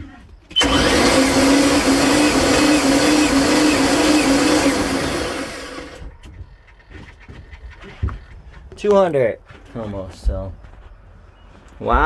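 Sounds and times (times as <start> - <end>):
starter motor cranking engine: 0.2 - 6.1.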